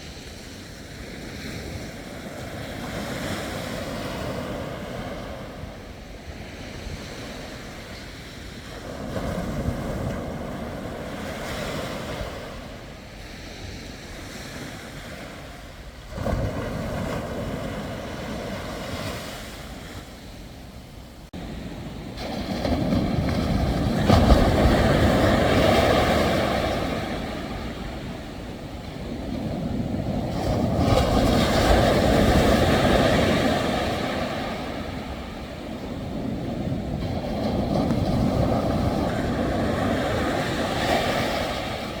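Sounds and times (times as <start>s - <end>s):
ocean waves breaking: 0.0s - 42.0s.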